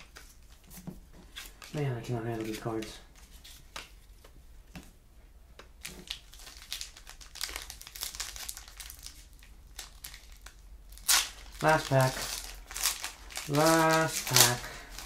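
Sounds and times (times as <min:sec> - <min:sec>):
card wrappers crinkling: 0:05.8 - 0:15.0.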